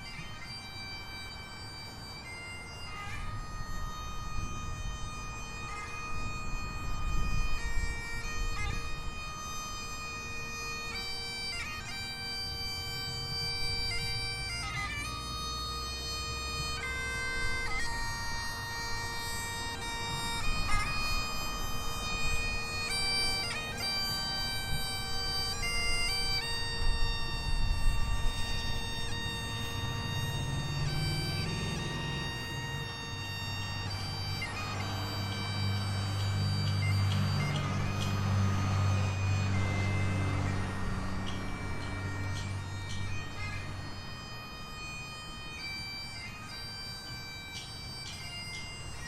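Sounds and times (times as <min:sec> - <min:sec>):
bagpipe drone: 0:00.0 - 0:49.0
bagpipes playing slow melody: 0:00.0 - 0:49.0.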